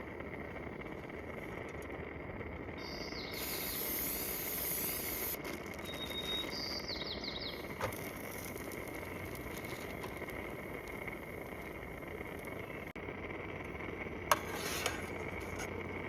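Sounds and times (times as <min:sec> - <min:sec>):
birds chirping: 0:02.7 - 0:13.0
background hiss: 0:02.8 - 0:13.0.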